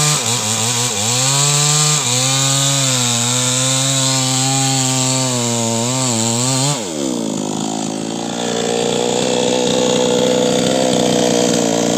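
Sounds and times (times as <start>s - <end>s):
chainsaw running at high revs: 0.0s - 11.9s.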